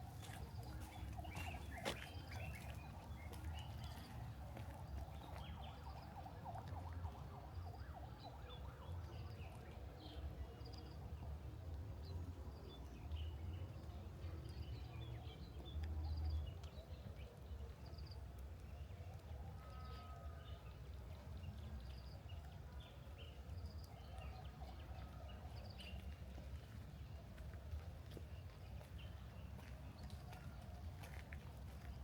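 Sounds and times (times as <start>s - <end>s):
birds chirping: 0.0s - 6.1s.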